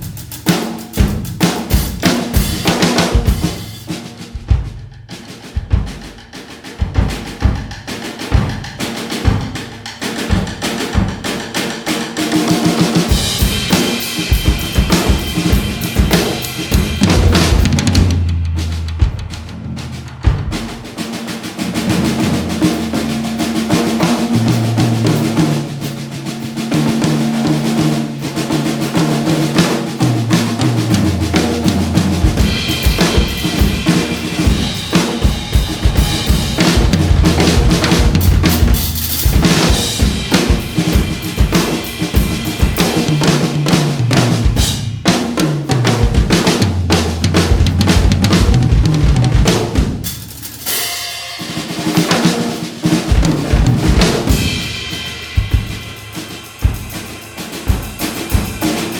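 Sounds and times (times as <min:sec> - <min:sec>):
drum kit playing a groove: 0:00.0 - 0:58.9
backing track with bass line: 0:35.8 - 0:40.0.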